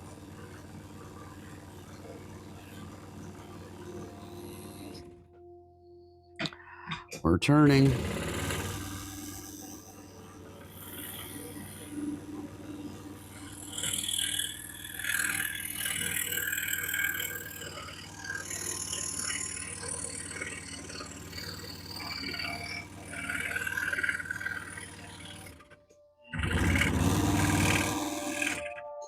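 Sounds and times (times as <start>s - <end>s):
scroll saw cutting wood: 7.8s - 25.8s, 26.4s - 28.9s.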